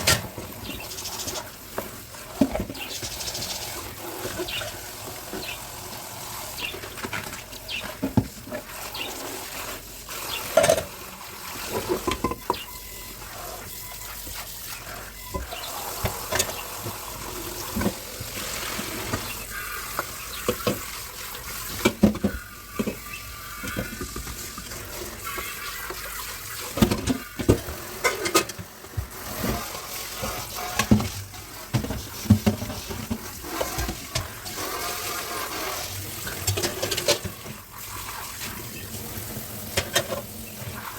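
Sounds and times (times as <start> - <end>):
tap water running into sink: 0.0 - 40.9
dishes clinking and knocking: 10.5 - 11.0, 11.8 - 12.7, 26.8 - 28.7, 39.8 - 40.3.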